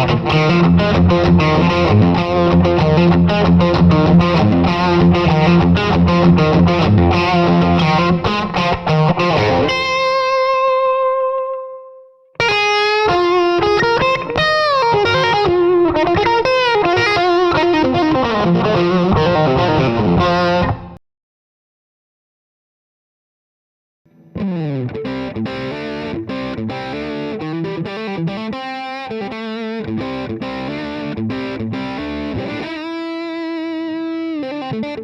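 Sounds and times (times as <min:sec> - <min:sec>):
electric guitar music: 0:00.0 - 0:21.0, 0:24.1 - 0:35.0.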